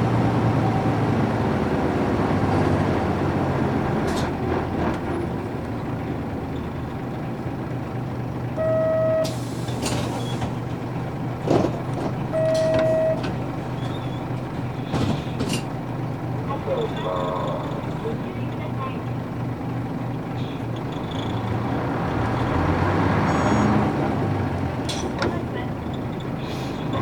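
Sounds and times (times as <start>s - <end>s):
bus diesel engine running: 0.0s - 27.0s
short electronic beeps: 8.6s - 9.3s, 12.4s - 13.2s, 23.2s - 23.8s
air brake hiss: 9.2s - 10.4s.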